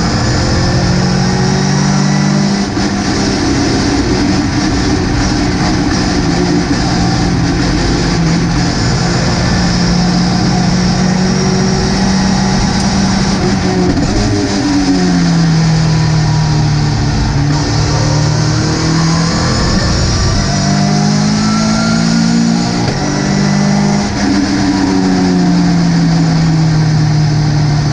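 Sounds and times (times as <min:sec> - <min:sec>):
race car engine running: 0:00.0 - 0:27.9.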